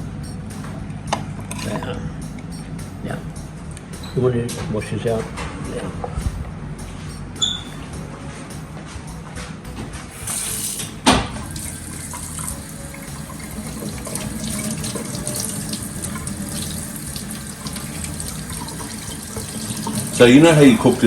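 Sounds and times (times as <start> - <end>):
tap water running into sink: 10.2 - 21.0.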